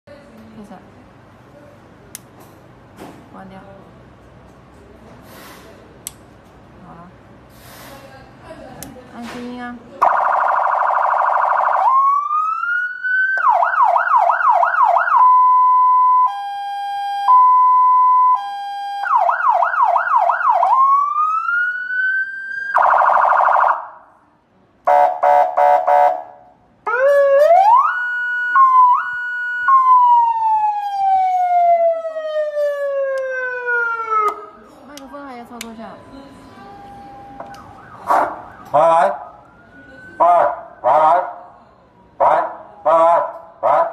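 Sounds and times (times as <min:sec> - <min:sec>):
electronic police siren: 0:10.0 - 0:24.0, 0:26.9 - 0:34.4, 0:36.7 - 0:41.4.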